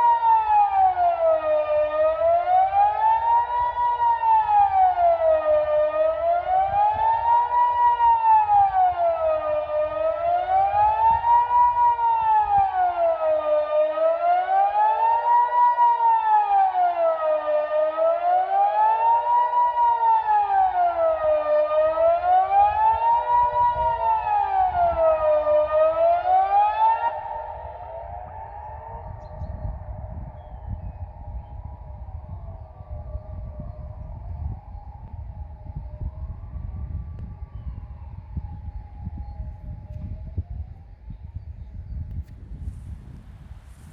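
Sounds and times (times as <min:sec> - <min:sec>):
rising and falling siren: 0:00.0 - 0:43.9.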